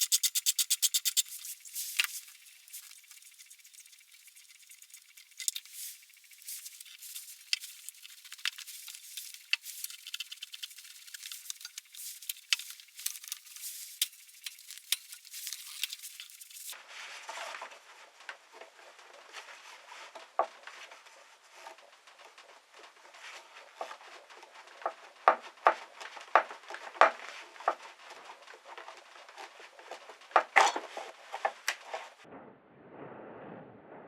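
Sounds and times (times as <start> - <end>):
small parts and tools clinking: 0.0 - 16.8.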